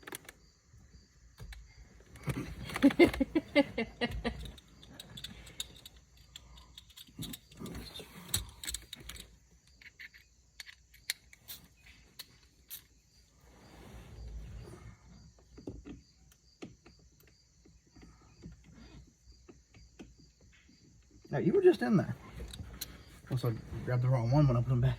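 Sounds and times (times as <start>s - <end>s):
small metal tools clinking: 4.1s - 13.0s.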